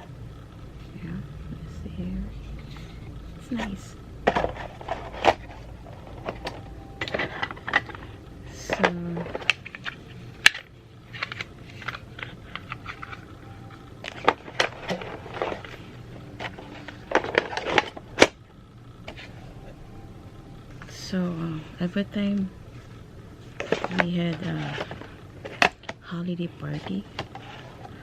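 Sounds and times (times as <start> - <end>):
plastic packaging rustling: 4.3 - 18.4, 22.7 - 26.0.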